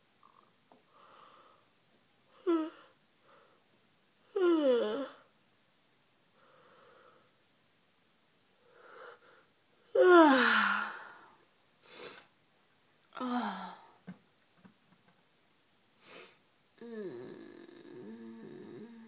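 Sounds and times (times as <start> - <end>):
woman yawning: 13.2 - 14.0.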